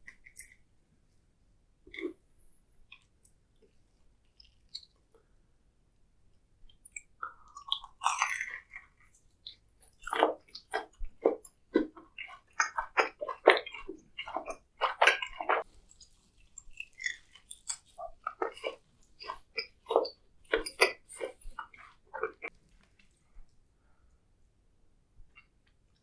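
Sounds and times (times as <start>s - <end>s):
chewing: 0.0s - 0.6s, 2.9s - 5.2s, 6.7s - 23.6s.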